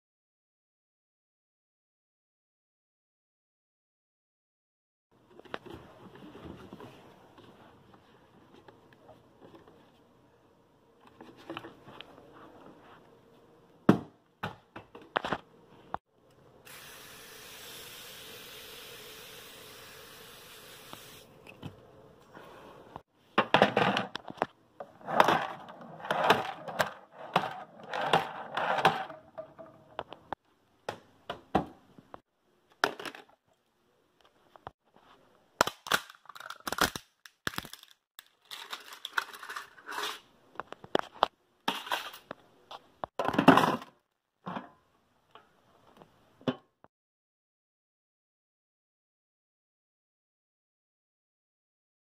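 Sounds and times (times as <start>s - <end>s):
plastic cracking and crunching: 35.6s - 39.8s.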